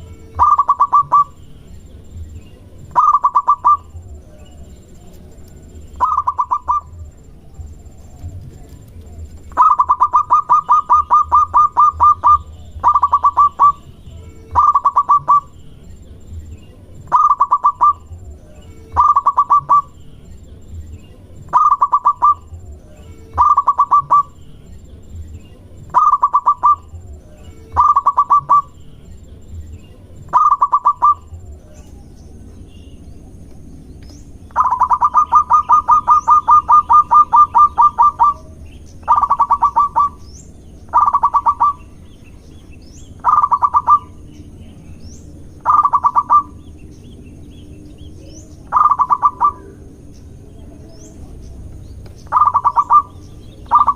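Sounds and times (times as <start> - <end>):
dove calling in staccato notes: 0.0 - 4.7, 5.8 - 7.2, 7.9 - 15.8, 16.4 - 20.1, 20.9 - 24.6, 25.2 - 29.0, 29.6 - 31.5, 34.1 - 44.5, 45.5 - 46.7, 48.3 - 49.9, 52.1 - 53.9.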